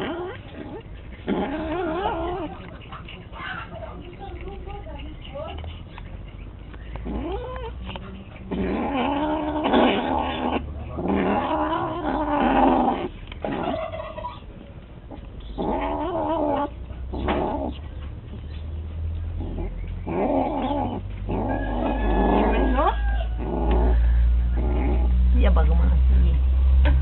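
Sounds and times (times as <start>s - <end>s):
cat growling and yowling: 0.0s - 2.6s, 8.5s - 13.8s, 15.6s - 17.8s, 19.4s - 24.0s.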